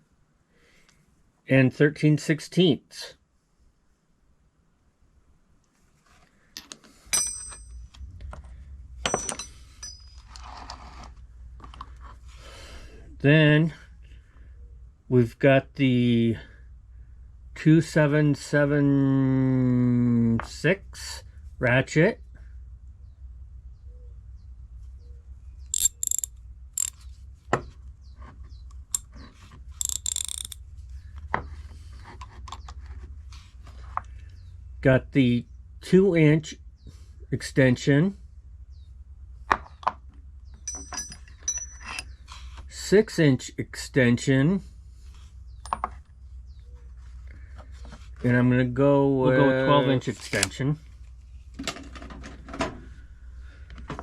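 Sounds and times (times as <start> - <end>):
steel tools clinking: 6.6 - 7.9, 9.0 - 10.4, 25.7 - 27.0, 29.8 - 30.6, 40.6 - 42.2
metallic clanks ringing: 7.1 - 7.9, 9.0 - 10.2, 40.6 - 42.2
hand ratchet clicking: 25.7 - 27.0, 29.8 - 30.6.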